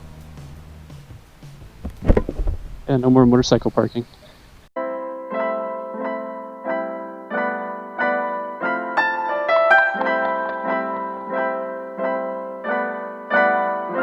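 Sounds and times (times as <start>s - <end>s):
piano playing chords: 0.0s - 1.8s, 4.8s - 14.0s.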